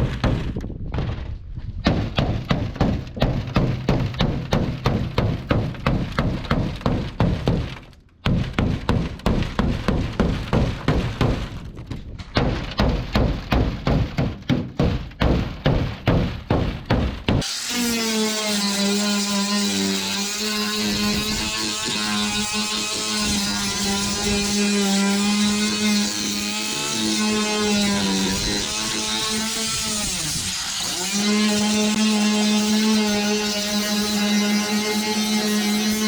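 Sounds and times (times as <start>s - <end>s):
striking blows on hard material: 0.0s - 17.6s.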